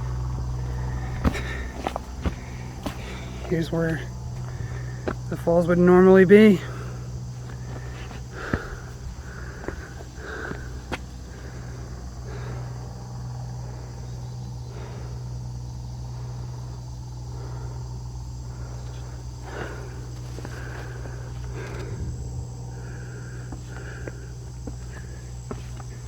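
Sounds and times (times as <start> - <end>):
footsteps on dry rock: 0.0 - 11.6, 19.5 - 26.0
constant low hum: 0.0 - 26.0
insects humming: 0.0 - 26.0.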